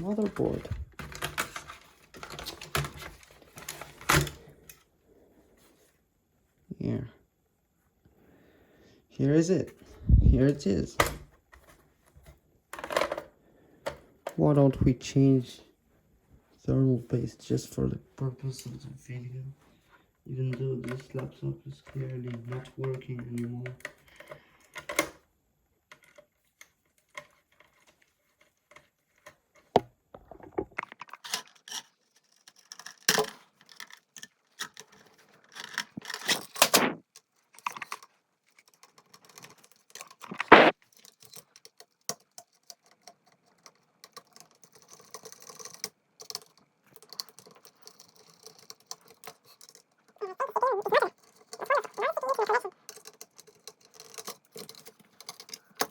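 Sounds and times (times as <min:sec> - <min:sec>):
clicks and taps of small parts: 0:21.8 - 0:25.2, 0:32.6 - 0:50.2.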